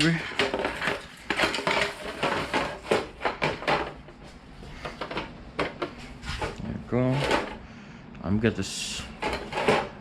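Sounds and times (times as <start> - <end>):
clicks and knocks of plastic parts: 0.2 - 4.1, 4.8 - 6.6.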